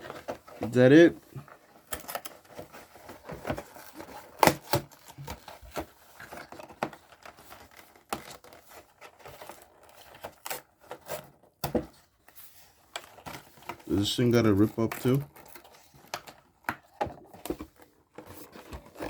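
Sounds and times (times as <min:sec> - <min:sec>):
cardboard tearing: 0:00.0 - 0:11.9, 0:12.8 - 0:19.0.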